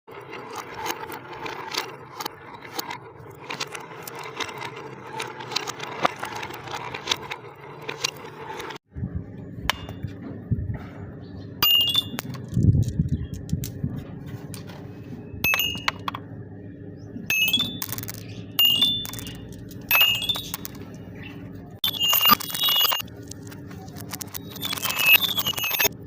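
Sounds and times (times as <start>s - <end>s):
low rolling rumble: 8.3s - 21.8s
bright ringing note: 15.4s - 16.1s
marbles clattering down a track: 15.5s - 16.2s, 17.3s - 26.0s.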